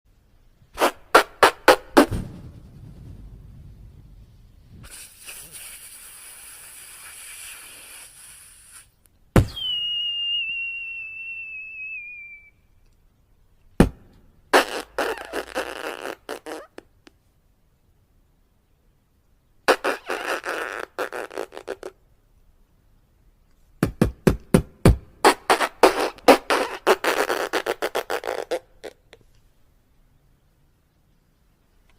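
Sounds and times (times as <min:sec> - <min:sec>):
mouth crackling: 0:03.1 - 0:13.0, 0:13.6 - 0:17.2, 0:19.6 - 0:22.1, 0:24.8 - 0:29.4
person imitating fireworks with mouth: 0:04.7 - 0:09.9, 0:14.5 - 0:17.0, 0:19.7 - 0:22.0, 0:25.2 - 0:29.2
mouth whistle falling in pitch: 0:09.4 - 0:12.8.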